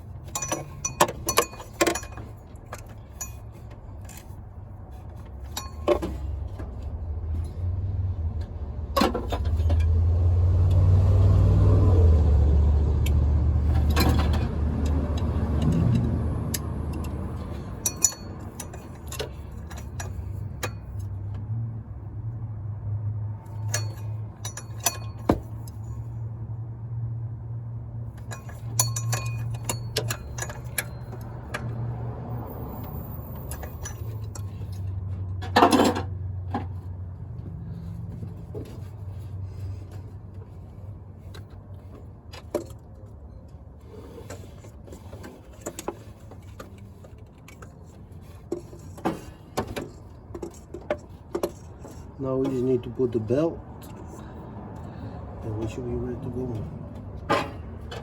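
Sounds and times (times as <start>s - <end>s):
low vehicle rumble: 0.0s - 58.0s
metallic clinks of hand tools: 0.2s - 3.6s, 16.9s - 21.0s, 23.6s - 26.0s, 28.2s - 31.6s.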